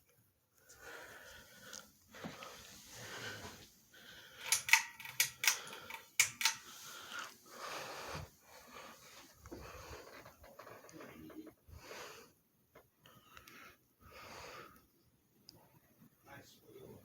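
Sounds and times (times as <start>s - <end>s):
ceiling fan running: 0.7s - 12.3s
sharp clicks: 4.4s - 6.7s.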